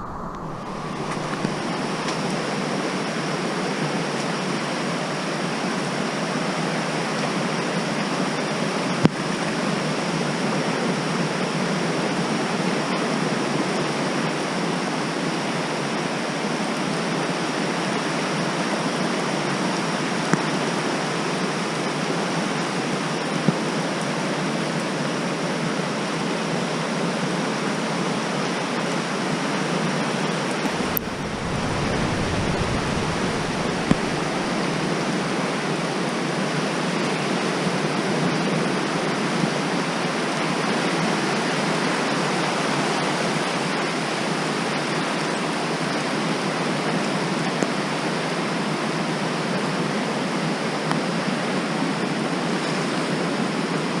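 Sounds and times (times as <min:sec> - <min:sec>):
low rumble: 0:00.0 - 0:03.0, 0:30.7 - 0:35.4
water rushing: 0:00.0 - 0:03.2, 0:30.6 - 0:36.4.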